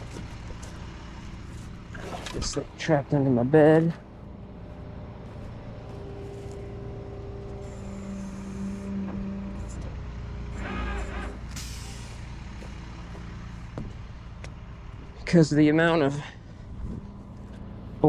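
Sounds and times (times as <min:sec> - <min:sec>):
vehicle engine idling: 0:00.0 - 0:18.0
brief hiss: 0:11.5 - 0:12.3.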